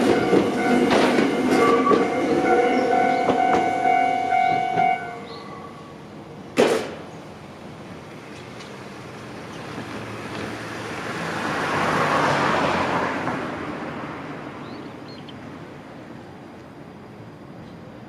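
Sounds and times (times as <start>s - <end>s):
vehicle passing by: 9.8s - 15.2s.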